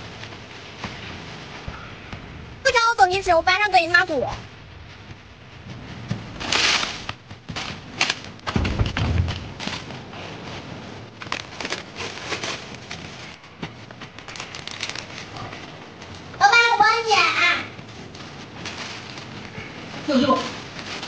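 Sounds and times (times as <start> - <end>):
dull thump: 8.5 - 9.7.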